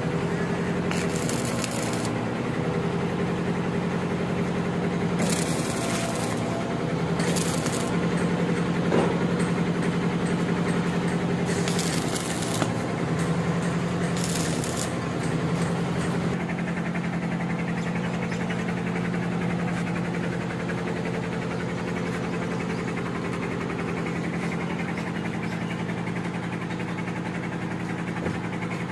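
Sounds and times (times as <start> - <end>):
machine humming: 0.0 - 27.4.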